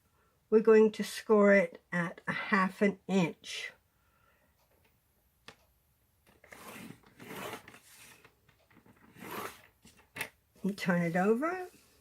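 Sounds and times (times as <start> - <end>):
blade scraping along cardstock: 6.4 - 8.3, 9.1 - 9.7.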